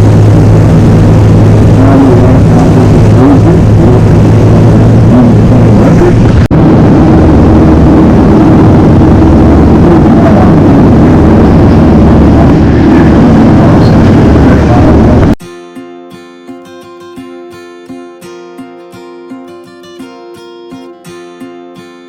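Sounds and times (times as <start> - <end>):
boat engine running: 0.0 - 15.4.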